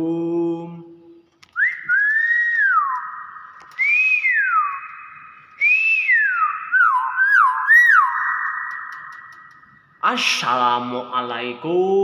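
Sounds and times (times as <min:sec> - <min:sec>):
myna bird whistling: 0:01.5 - 0:09.9.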